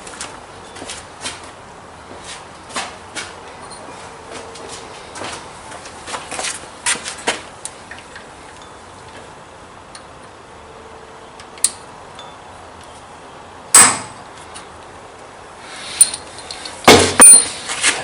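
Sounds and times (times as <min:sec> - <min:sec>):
hammer striking metal punch: 0:13.8 - 0:14.2, 0:16.9 - 0:17.5.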